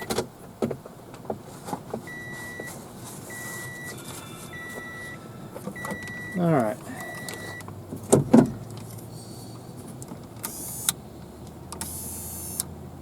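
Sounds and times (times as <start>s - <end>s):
car warning chime beeping: 2.1s - 7.7s.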